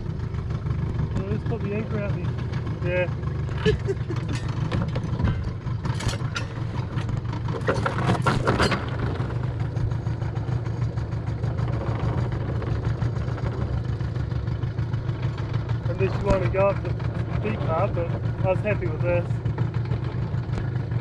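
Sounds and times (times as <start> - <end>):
outboard motor idling: 0.0 - 21.0
short clattering rattles: 3.4 - 9.5.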